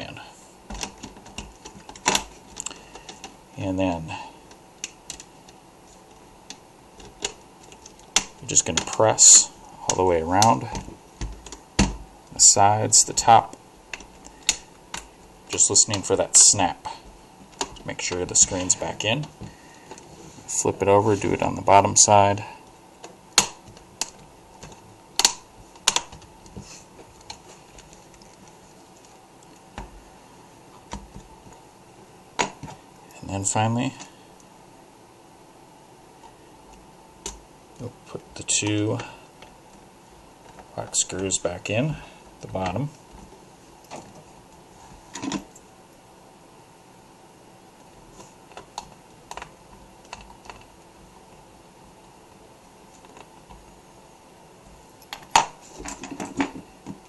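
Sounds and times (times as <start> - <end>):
plastic clips snapping into place: 23.4 - 26.3.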